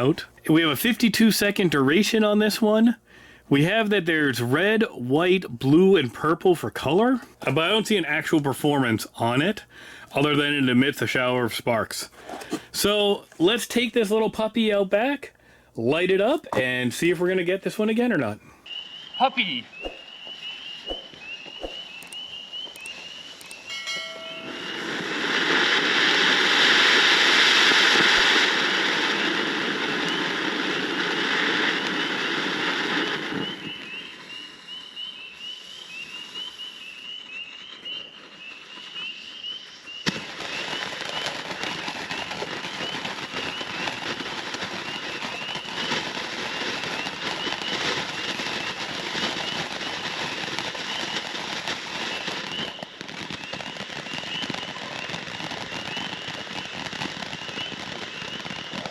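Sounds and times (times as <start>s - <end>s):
crackling hiss: 0.0s - 58.9s
firework fountain hissing: 18.7s - 58.9s
sharp pop: 20.9s - 21.8s.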